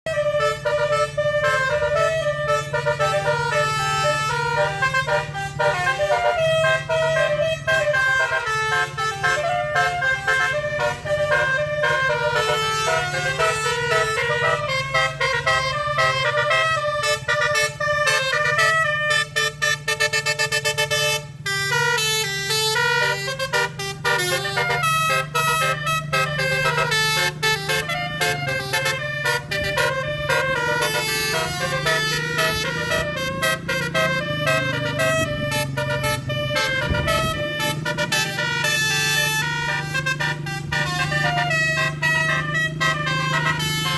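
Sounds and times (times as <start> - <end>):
multi-tone bus horn melody: 0.0 - 43.9.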